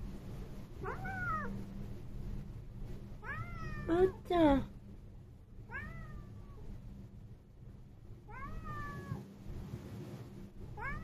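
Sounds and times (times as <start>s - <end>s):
cat meowing: 0.8s - 1.6s, 3.2s - 3.9s, 5.7s - 6.6s, 8.3s - 9.2s, 10.8s - 11.0s.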